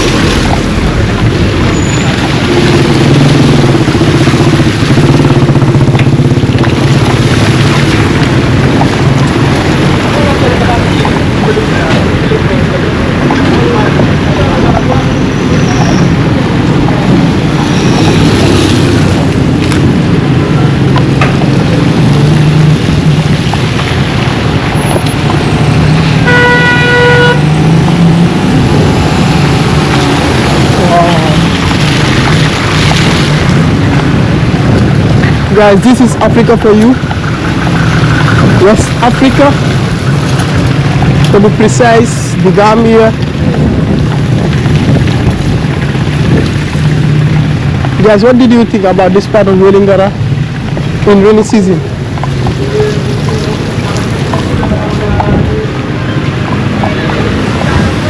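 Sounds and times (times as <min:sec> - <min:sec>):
vehicle engine running: 0:00.0 - 0:15.4
street noise: 0:00.0 - 0:58.0
wind noise: 0:00.0 - 0:58.0
vehicle horn: 0:26.2 - 0:27.5.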